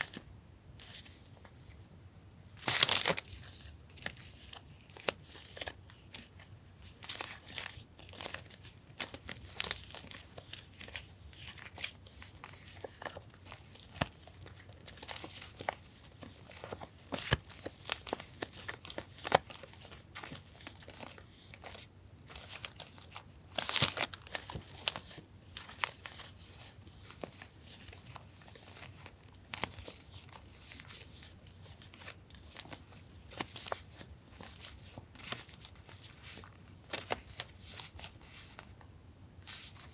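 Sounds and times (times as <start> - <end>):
paper crinkling and rustling: 2.5 - 39.9.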